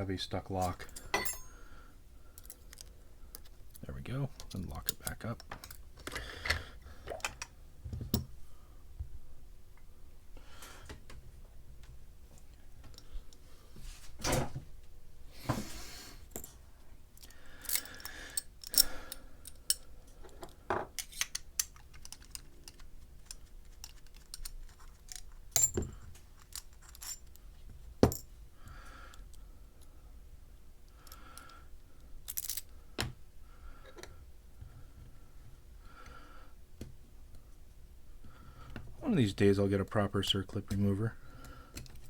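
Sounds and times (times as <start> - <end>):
small metallic clicks and clinks: 17.2 - 27.4.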